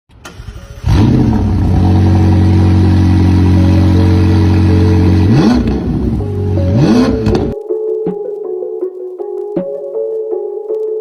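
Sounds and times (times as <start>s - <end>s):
car engine starting and idling: 0.1s - 7.6s
engine revving: 0.3s - 7.6s.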